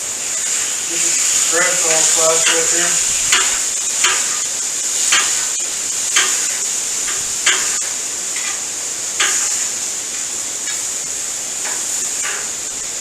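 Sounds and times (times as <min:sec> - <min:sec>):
steady sizzle: 0:00.0 - 0:13.0.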